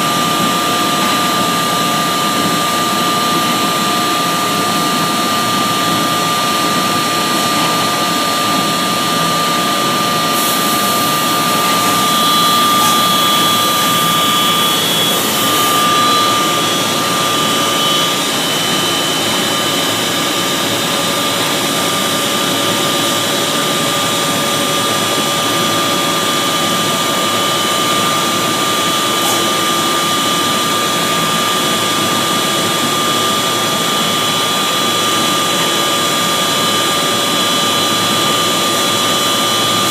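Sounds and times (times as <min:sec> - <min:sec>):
belt-driven machine whining: 0:09.9 - 0:20.9, 0:24.1 - 0:39.9.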